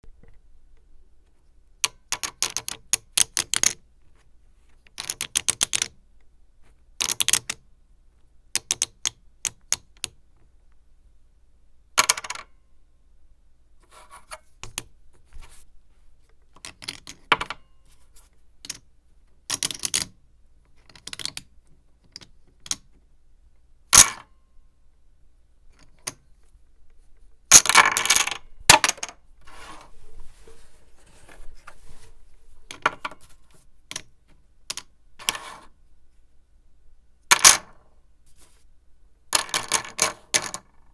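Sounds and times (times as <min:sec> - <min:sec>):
clay poker chips clattering: 0:04.9 - 0:05.9, 0:16.5 - 0:17.6, 0:19.5 - 0:20.2, 0:39.3 - 0:40.8.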